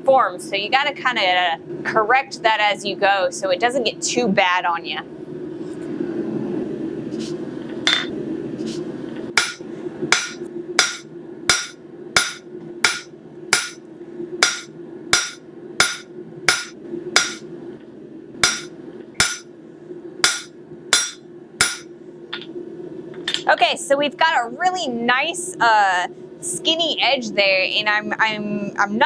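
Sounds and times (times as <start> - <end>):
steady low hum: 0.0 - 29.0
hammer ringing on anvil: 9.4 - 13.8, 14.4 - 17.4, 18.4 - 19.4, 20.2 - 21.9.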